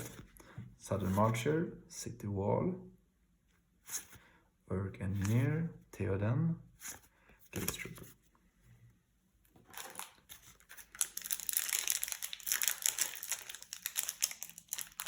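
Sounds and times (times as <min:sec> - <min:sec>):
pack wrapper crinkling and tearing: 0:09.7 - 0:15.0.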